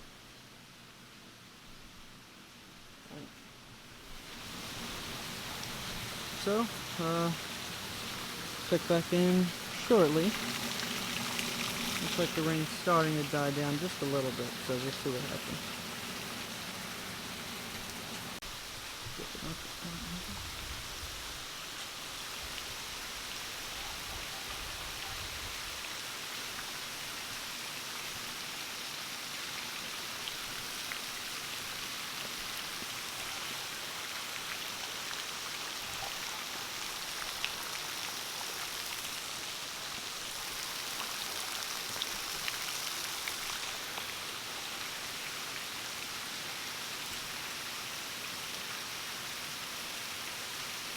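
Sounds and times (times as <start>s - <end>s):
heavy rain hissing: 3.9s - 23.8s.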